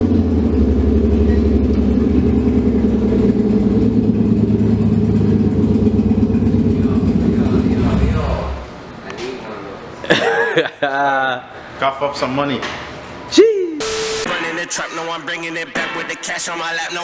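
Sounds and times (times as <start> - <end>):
car engine and exhaust droning: 0.0 - 9.0.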